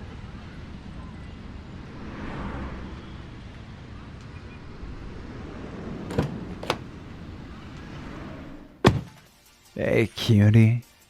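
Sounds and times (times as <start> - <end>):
sharp knocks: 8.8 - 9.2.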